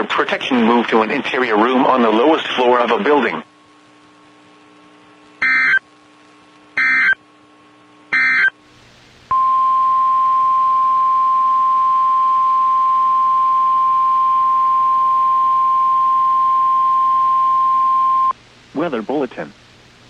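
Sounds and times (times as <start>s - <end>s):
screechy digital data tones: 5.4s - 5.8s, 6.8s - 7.2s, 8.2s - 8.5s
steady warning alarm tone: 5.4s - 5.8s, 6.8s - 7.2s, 8.2s - 8.5s.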